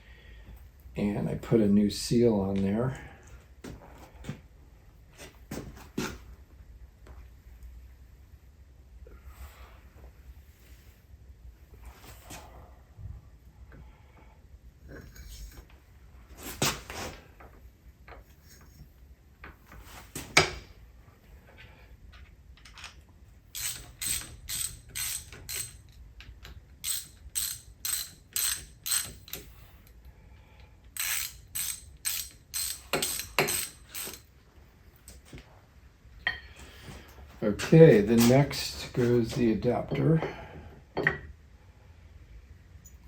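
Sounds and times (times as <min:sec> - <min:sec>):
ratchet wrench clicking: 0:23.5 - 0:29.5, 0:31.0 - 0:34.3.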